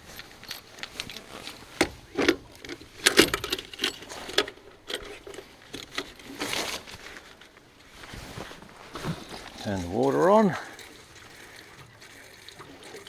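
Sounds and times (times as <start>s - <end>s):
metallic clinks and knocks: 0.0s - 6.8s.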